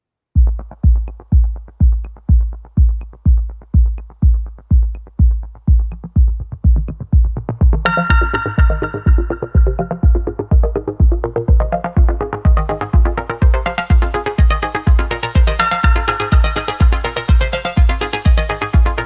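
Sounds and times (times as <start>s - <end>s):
electronic background music: 0.4s - 19.0s
steady kick drum: 0.4s - 19.0s
bright synthesizer chord: 7.8s - 19.0s.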